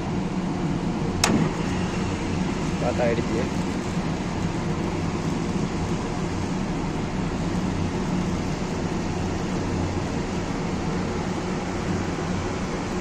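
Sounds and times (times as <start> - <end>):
air conditioner humming: 0.0 - 13.0.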